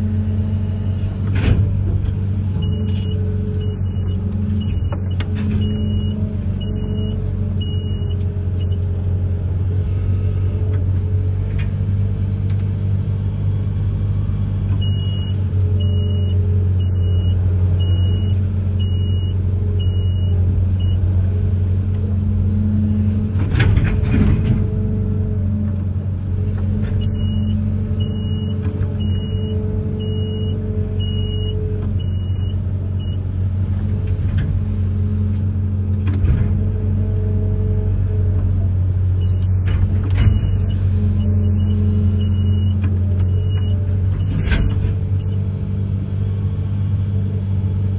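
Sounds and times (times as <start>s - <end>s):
diesel engine running: 0.0s - 47.9s
electronic warning alarm beeping: 27.0s - 33.2s.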